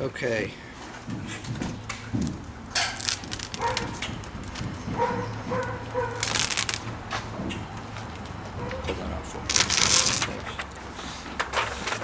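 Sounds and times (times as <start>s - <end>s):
tape peeling: 1.2s - 10.8s
tape and paper crinkling: 1.2s - 12.0s.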